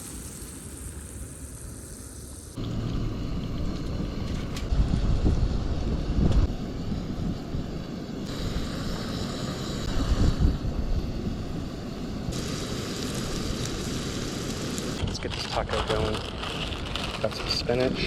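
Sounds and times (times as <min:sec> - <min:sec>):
fish frying in oil: 0:00.0 - 0:02.6, 0:12.4 - 0:15.1
wind buffeting microphone: 0:03.5 - 0:13.8.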